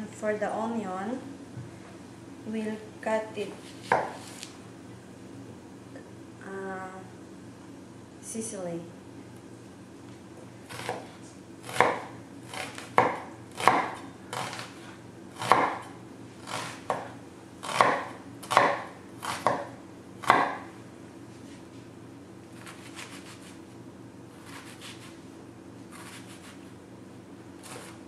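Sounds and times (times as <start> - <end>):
knife cutting onion on board: 3.6 - 4.5, 10.7 - 20.7, 22.5 - 23.6, 24.4 - 25.2, 25.9 - 26.7, 27.6 - 28.0.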